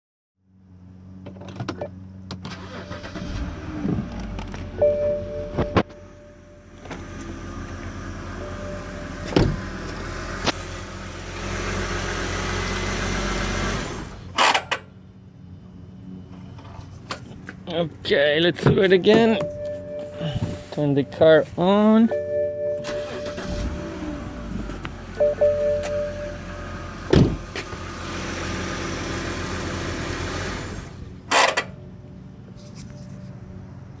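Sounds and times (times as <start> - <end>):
car engine humming: 0.5 - 34.0
loud clunk: 27.1 - 27.8.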